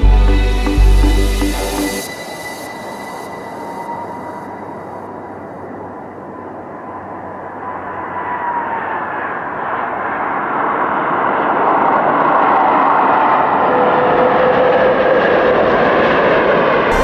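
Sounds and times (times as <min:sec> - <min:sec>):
airliner engines roaring: 0:00.0 - 0:17.0.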